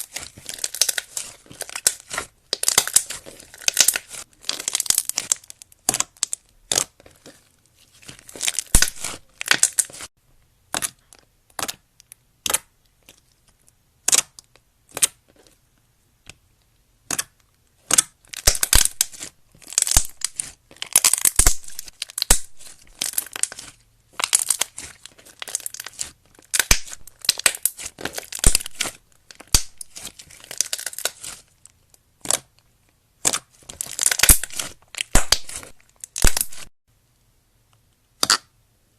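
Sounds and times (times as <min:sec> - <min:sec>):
slime crackling and popping: 0:00.0 - 0:10.1, 0:17.1 - 0:31.5, 0:32.2 - 0:32.5, 0:33.2 - 0:36.7.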